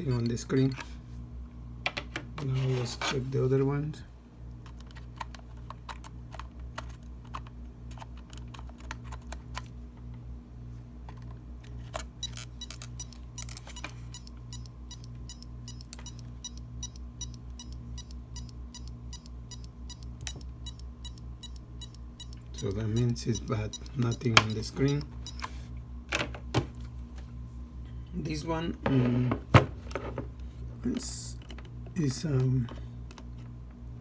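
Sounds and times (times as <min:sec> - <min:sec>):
hard drive pulsing hum: 0:00.0 - 0:34.0
hard drive sharp clicking: 0:11.1 - 0:25.5.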